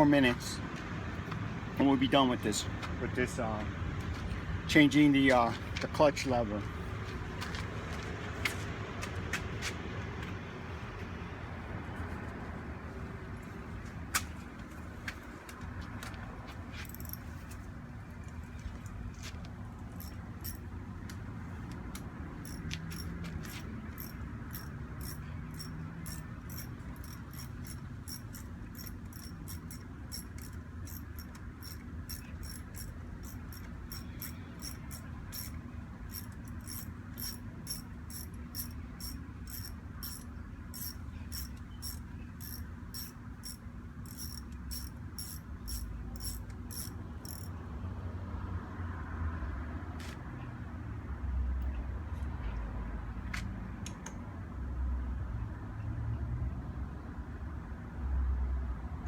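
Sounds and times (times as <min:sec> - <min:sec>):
ratchet wrench clicking: 0:16.9 - 0:17.2, 0:20.0 - 0:20.6, 0:22.4 - 0:47.5.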